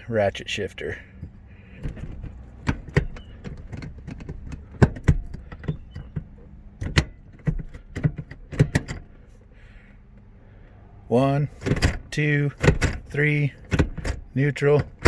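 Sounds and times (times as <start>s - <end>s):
shifter lever clacking: 1.1s - 9.4s, 11.5s - 15.0s.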